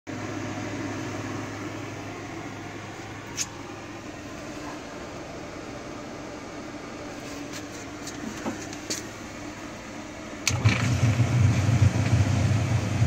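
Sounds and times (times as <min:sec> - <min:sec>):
mechanical motor hum: 0:00.1 - 0:13.0
sharp click: 0:03.3 - 0:03.6.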